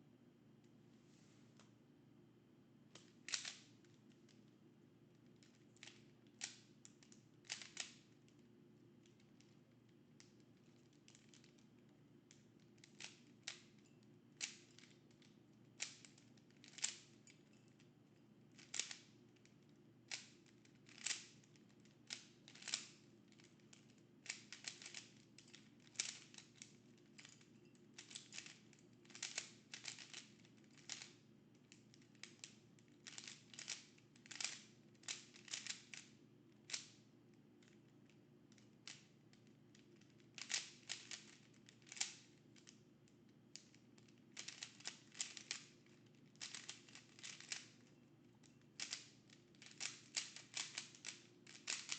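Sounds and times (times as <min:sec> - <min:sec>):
faint steady hum: 0:00.0 - 0:51.9
puzzle cube layers clicking: 0:07.5 - 0:08.0, 0:20.9 - 0:21.3, 0:24.3 - 0:25.1, 0:25.9 - 0:26.4, 0:28.1 - 0:31.1, 0:32.2 - 0:36.0, 0:40.4 - 0:42.2, 0:44.4 - 0:45.7, 0:46.4 - 0:47.8, 0:48.8 - 0:51.9.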